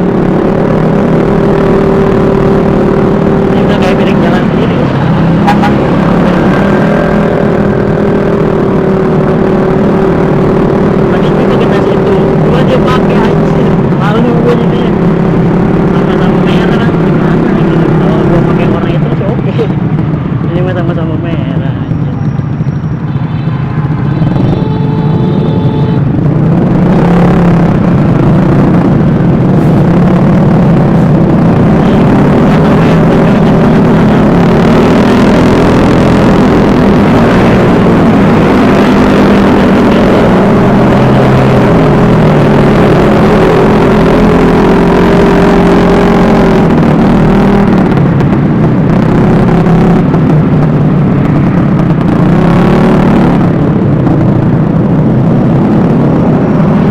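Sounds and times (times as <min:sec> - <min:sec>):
wind noise: 0:00.0 - 0:56.9
scooter engine running: 0:21.6 - 0:56.9.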